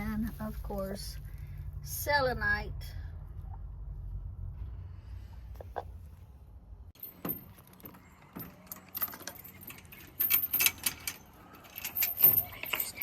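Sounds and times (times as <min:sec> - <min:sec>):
low rumble: 0:00.0 - 0:07.0.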